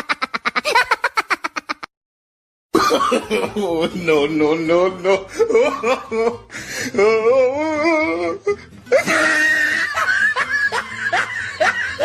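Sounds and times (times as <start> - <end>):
wheezy breath: 6.5 - 7.0.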